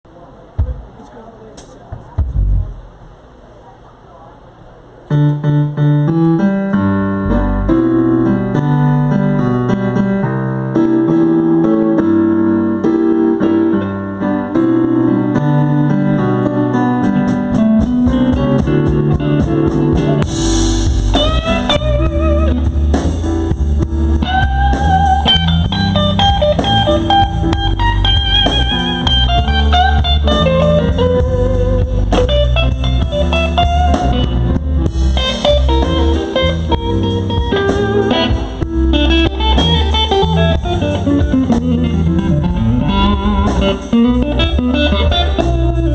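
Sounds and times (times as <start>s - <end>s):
drums and bass: 1.9s - 3.2s, 17.0s - 45.9s
electric lead guitar bent notes: 5.1s - 45.9s
slow electric blues band: 5.1s - 45.9s.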